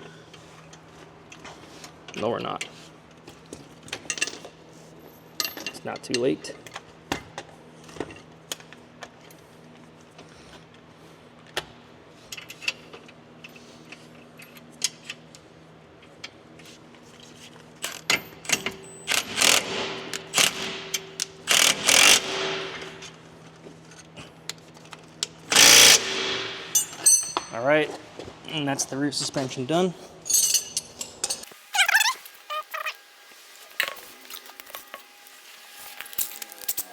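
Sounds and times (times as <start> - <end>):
power tool driving bolts: 17.9 - 23.1, 25.5 - 27.0
metal tools clinking: 26.7 - 27.6, 30.2 - 31.5, 35.9 - 36.9.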